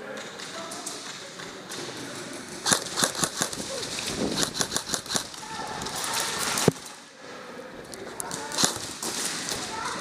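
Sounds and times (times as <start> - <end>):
airsoft guns firing: 2.6 - 5.5, 8.3 - 9.7.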